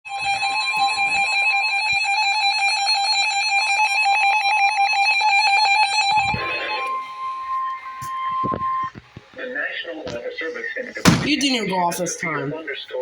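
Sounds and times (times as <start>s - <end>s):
pulsing two-pitch alarm tone: 0.1s - 9.0s.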